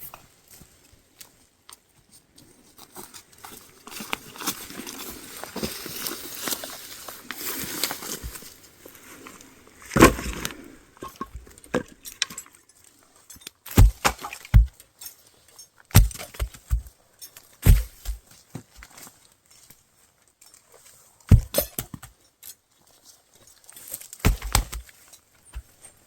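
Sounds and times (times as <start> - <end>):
rustling: 2.1 - 26.0
deep thuds and knocks: 13.7 - 14.8, 15.9 - 16.9, 17.6 - 18.2, 21.3 - 22.1, 24.2 - 24.8.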